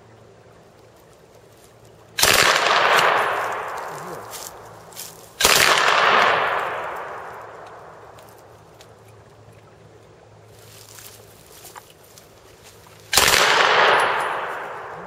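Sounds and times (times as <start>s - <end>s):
gunfire echo: 2.2s - 4.6s, 5.4s - 8.1s, 13.1s - 15.0s
machine gun automatic fire: 13.2s - 14.8s.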